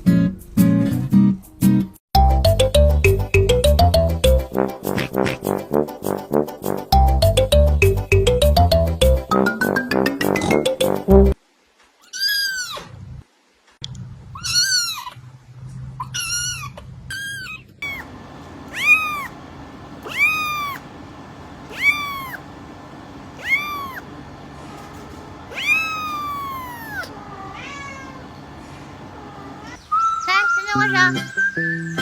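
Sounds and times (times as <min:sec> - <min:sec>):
cat meowing: 0:12.0 - 0:12.9, 0:14.4 - 0:15.2, 0:16.0 - 0:18.1, 0:18.7 - 0:19.4, 0:20.0 - 0:20.8, 0:21.7 - 0:22.4, 0:23.4 - 0:24.1, 0:25.5 - 0:28.4, 0:29.2 - 0:29.8.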